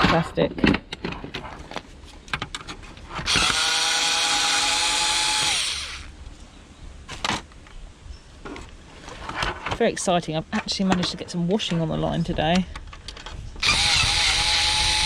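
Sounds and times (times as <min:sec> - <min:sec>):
power drill running: 0:03.3 - 0:06.1, 0:13.6 - 0:15.0.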